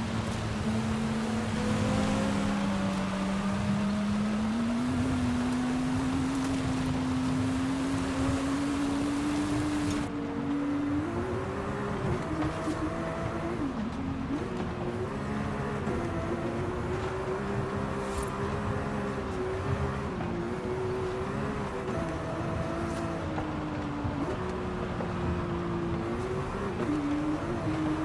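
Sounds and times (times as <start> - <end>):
sports car engine running: 0.0 - 28.0.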